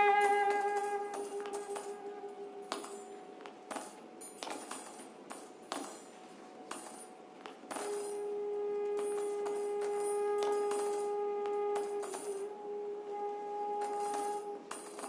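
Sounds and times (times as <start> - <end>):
chamber music for flute viola and harp: 0.0 - 3.4, 7.8 - 15.0
light jingling percussive taps: 2.7 - 8.2.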